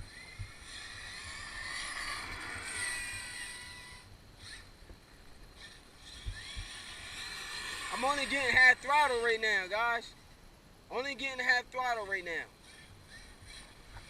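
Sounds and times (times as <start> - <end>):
electric motor whining: 0.0 - 9.4, 12.6 - 14.0.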